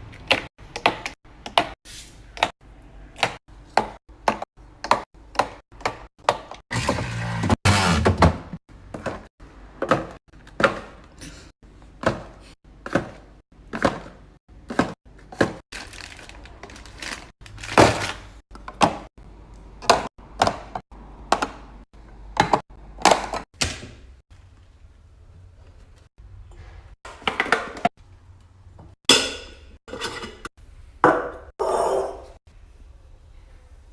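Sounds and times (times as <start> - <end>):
groceries set on fridge shelves: 0.1 - 19.1.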